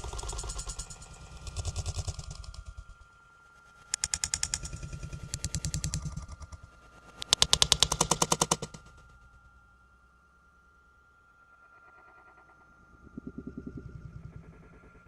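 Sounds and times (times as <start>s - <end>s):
rapid rattling clatter: 0.0s - 2.8s.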